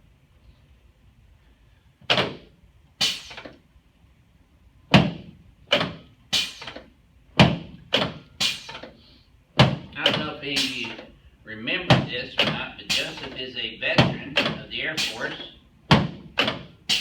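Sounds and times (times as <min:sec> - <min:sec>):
sharp thuds: 0:04.9 - 0:09.0, 0:09.6 - 0:11.1, 0:11.9 - 0:13.4, 0:14.0 - 0:14.7, 0:15.9 - 0:17.0.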